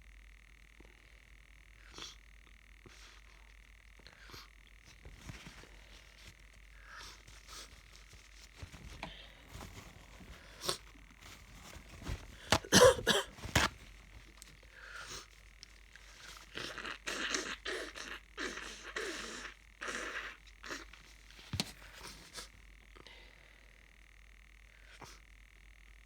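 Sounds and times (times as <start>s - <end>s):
person sneezing loudly: 12.1s - 13.7s.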